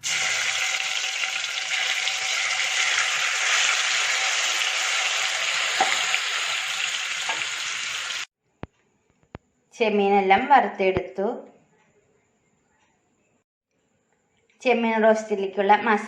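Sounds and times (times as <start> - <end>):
prawns sizzling in a pan: 0.0 - 8.3.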